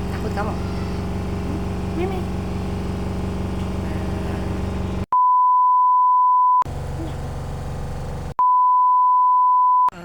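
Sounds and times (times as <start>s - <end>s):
mechanical hum: 0.0s - 5.1s
censor bleep tone: 5.1s - 6.6s, 8.4s - 10.0s.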